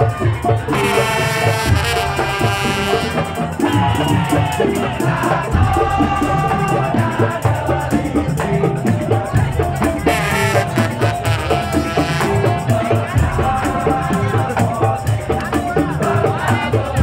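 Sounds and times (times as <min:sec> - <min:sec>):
low drums beating: 0:00.0 - 0:17.0
rattling percussion: 0:00.0 - 0:17.0
pitched melody line: 0:00.6 - 0:07.3, 0:09.2 - 0:16.0.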